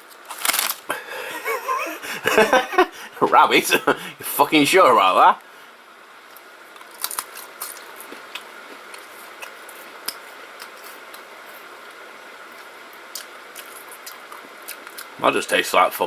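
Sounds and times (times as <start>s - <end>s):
crunching crisp cracker: 0.0s - 1.9s, 6.2s - 15.7s.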